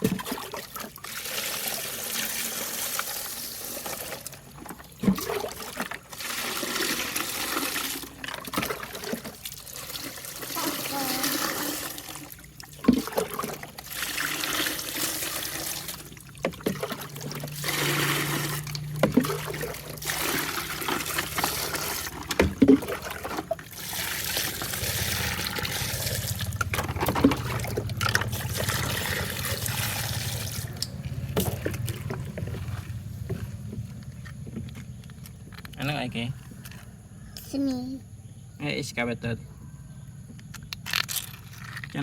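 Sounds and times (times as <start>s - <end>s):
tap water running and splashing: 0.0s - 33.9s.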